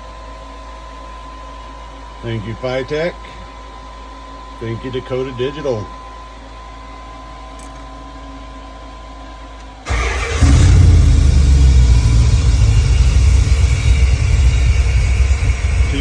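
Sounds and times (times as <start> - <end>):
engine cranking and idling: 9.9 - 16.0.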